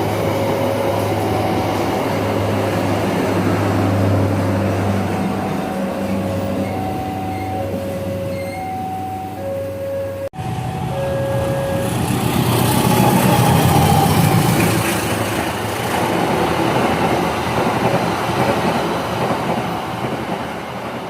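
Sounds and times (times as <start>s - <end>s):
held tone: 0.0s - 2.4s, 4.8s - 12.1s
train passing: 0.0s - 21.0s.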